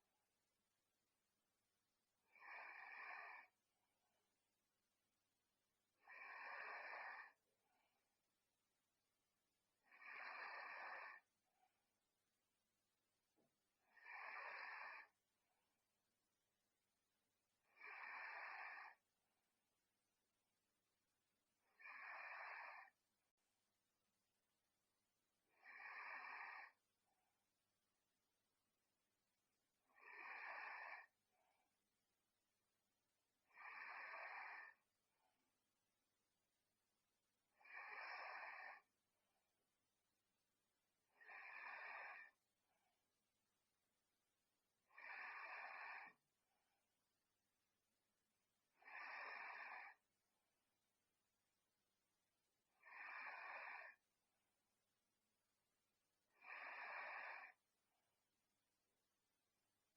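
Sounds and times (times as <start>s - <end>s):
girl breathing softly: 2.3s - 3.6s, 5.9s - 8.1s, 9.8s - 11.3s, 13.8s - 15.2s, 17.6s - 19.0s, 21.6s - 23.0s, 25.4s - 26.9s, 29.8s - 31.7s, 37.5s - 39.0s, 44.8s - 46.3s, 48.7s - 50.1s, 52.7s - 54.1s, 56.3s - 57.7s.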